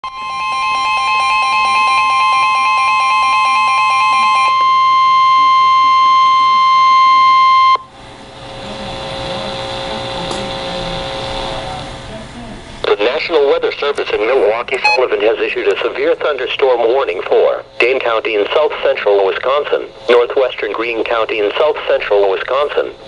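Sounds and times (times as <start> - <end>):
rapidly pulsing beep: 0.0 - 7.9, 14.8 - 15.2
steady warning alarm tone: 0.0 - 7.9, 13.2 - 18.9.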